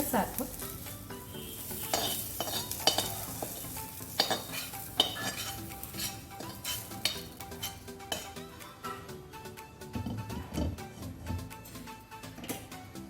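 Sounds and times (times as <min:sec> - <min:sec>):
onion sizzling in hot oil: 0:00.0 - 0:08.6
spatula scraping a pan: 0:01.4 - 0:09.1.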